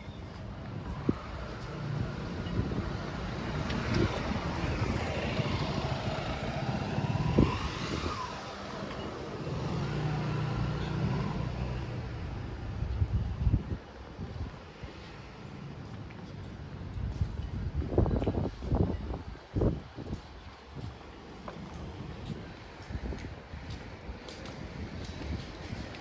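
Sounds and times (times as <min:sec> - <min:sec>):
motor vehicle passing by: 0:01.0 - 0:12.7.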